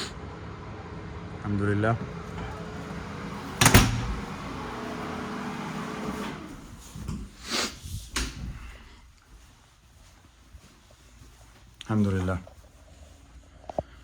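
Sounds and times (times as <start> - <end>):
door shutting with a bang: 3.4 - 4.6.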